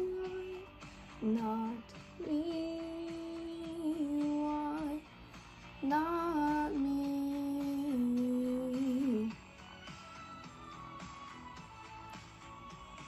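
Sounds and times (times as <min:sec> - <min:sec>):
woman singing long notes: 0:00.0 - 0:05.0
instrumental backing track: 0:00.0 - 0:13.0.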